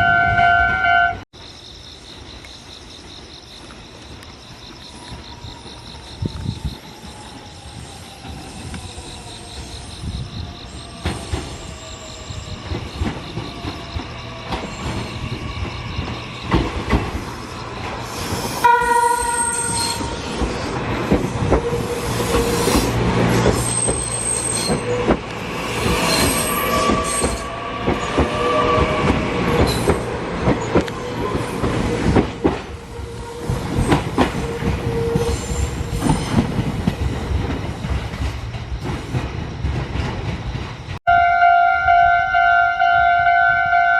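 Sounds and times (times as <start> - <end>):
train horn blast: 0.0 - 1.2, 18.6 - 20.2, 26.2 - 29.4, 32.8 - 35.6, 41.1 - 43.9
train wheels clattering and squealing: 2.6 - 41.0.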